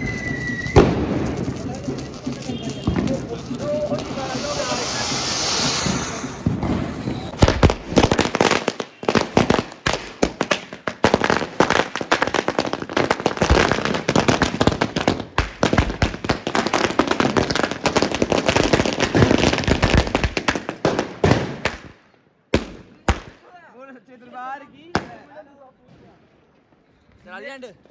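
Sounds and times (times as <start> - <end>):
firecrackers banging: 0.0 - 22.0.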